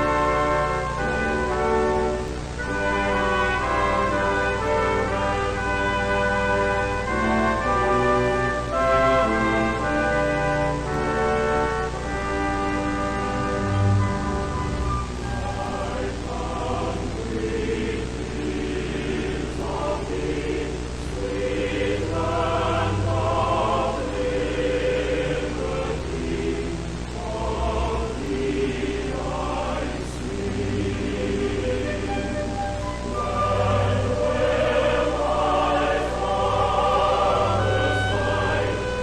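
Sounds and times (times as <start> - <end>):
choir singing held notes: 0.0 - 39.0
steady low drone: 0.0 - 39.0.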